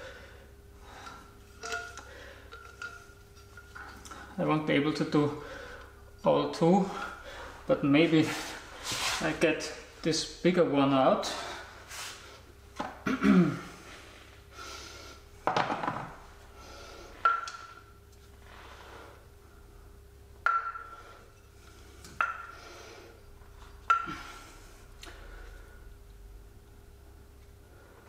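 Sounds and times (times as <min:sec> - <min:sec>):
steel cups clinking on metal: 0:01.6 - 0:04.2.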